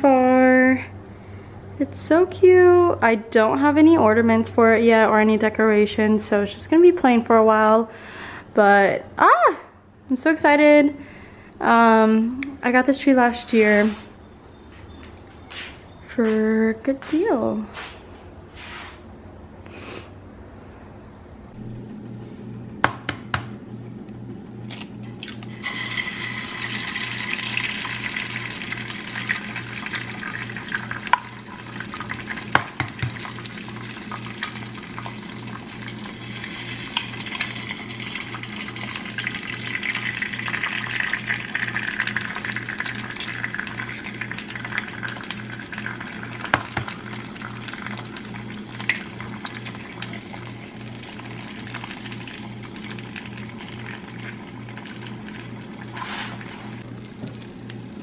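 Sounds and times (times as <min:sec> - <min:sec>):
eggs sizzling in a frying pan: 0:25.1 - 0:58.0.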